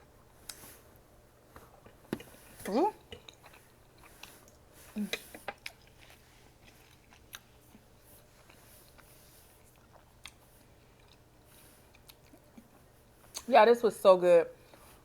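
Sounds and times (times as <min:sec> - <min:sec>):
person chewing food: 0:01.6 - 0:13.4.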